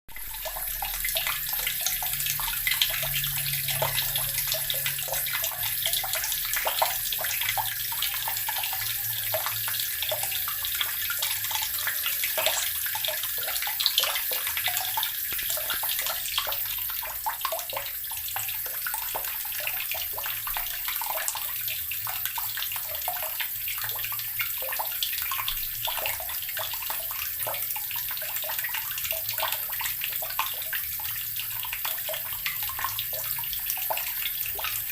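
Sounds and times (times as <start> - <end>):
tap water splashing into barrel: 12.4 - 34.9.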